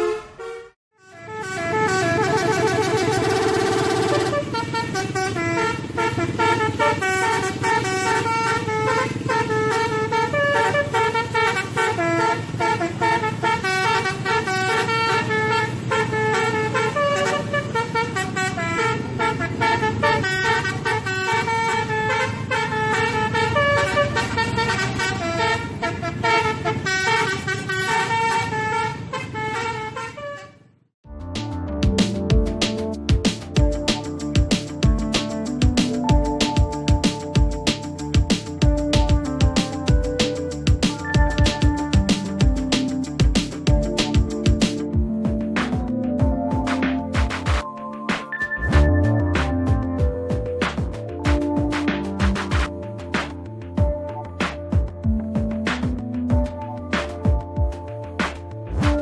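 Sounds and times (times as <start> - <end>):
bus horn playing multi-tone melody: 0.0 - 30.8, 32.3 - 47.7, 48.3 - 59.0.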